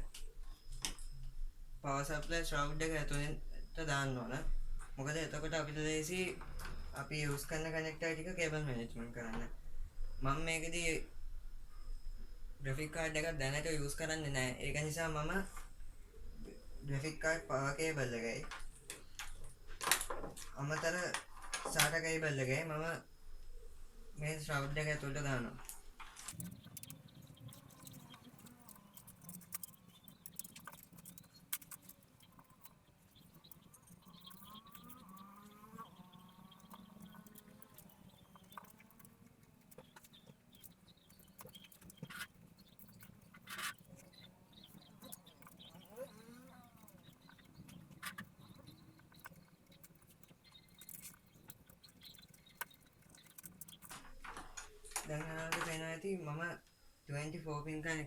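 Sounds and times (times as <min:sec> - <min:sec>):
low steady hum: 0:00.0 - 0:58.0
cables rustling and clicking: 0:17.8 - 0:22.6, 0:24.5 - 0:55.8.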